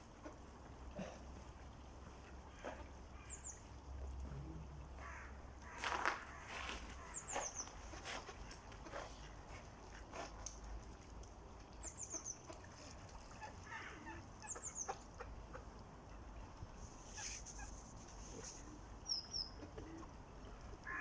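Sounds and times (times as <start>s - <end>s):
small bird calling: 13.4s - 15.7s, 16.9s - 20.0s.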